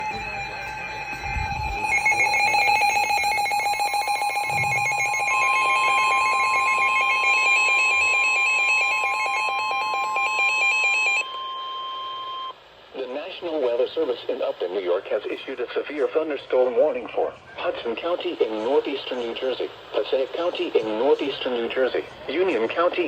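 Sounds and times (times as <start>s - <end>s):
pulsing electronic alarm tone: 0.0s - 12.6s
steady higher alarm tone: 0.0s - 12.7s.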